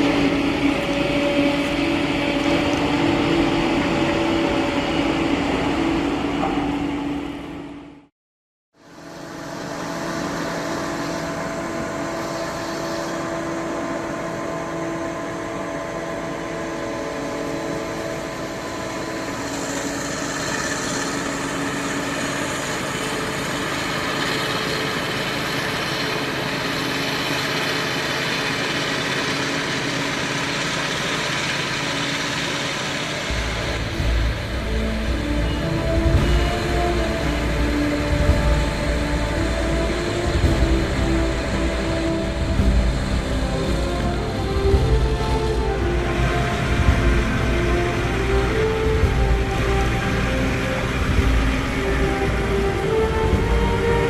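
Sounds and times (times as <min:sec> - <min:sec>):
broad mechanical noise: 0:00.0 - 0:08.1, 0:08.8 - 0:54.0
diesel engine running: 0:00.0 - 0:08.1, 0:08.8 - 0:54.0.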